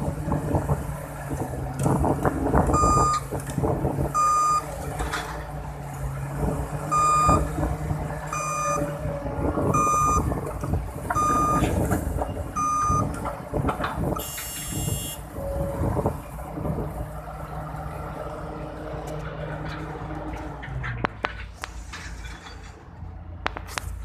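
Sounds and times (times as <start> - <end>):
diesel engine rumbling: 0.0 - 24.0
travel alarm beeping: 2.8 - 3.2, 4.2 - 4.6, 6.9 - 7.4, 8.3 - 8.8, 9.8 - 10.3, 11.2 - 11.7, 12.6 - 13.1, 14.2 - 15.2.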